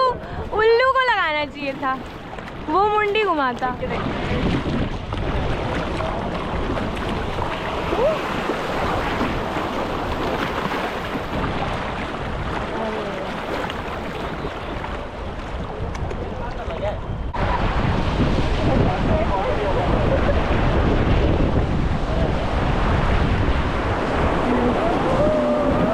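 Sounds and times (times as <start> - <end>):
river water rushing and splashing: 0.0 - 15.8, 20.6 - 25.9
wind on microphone: 0.0 - 25.9
faint voice: 24.4 - 25.9.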